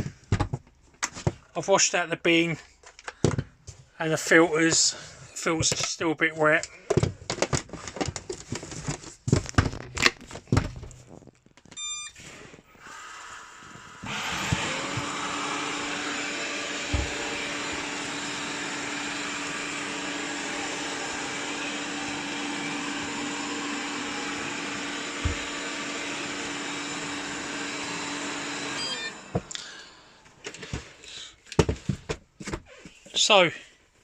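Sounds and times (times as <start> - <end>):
short electronic beep: 11.8 - 12.2, 28.8 - 29.2
robotic vacuum motor humming: 12.6 - 30.4.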